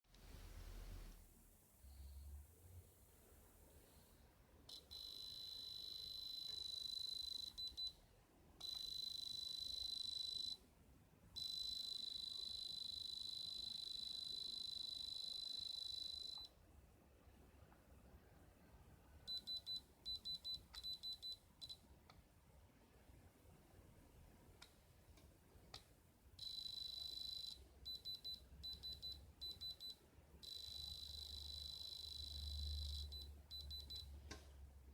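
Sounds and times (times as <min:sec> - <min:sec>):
electronic tester beeping: 0:04.7 - 0:08.0, 0:08.6 - 0:10.6, 0:11.4 - 0:16.5, 0:19.3 - 0:21.8, 0:26.4 - 0:34.1.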